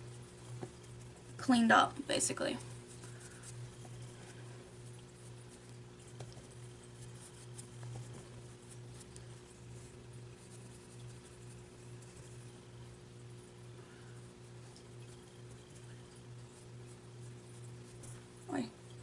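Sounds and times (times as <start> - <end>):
makeup brush scratching: 0.0 - 12.8
low electrical hum: 0.0 - 19.0.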